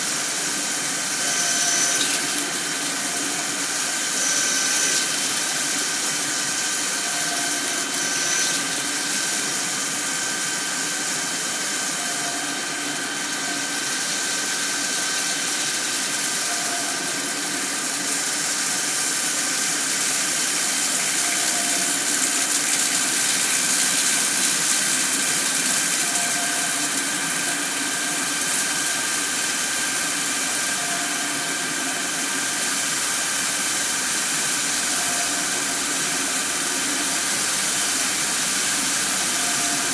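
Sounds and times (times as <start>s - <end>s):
coolant hiss: 0.0s - 39.9s
lathe machine whine: 0.0s - 39.9s.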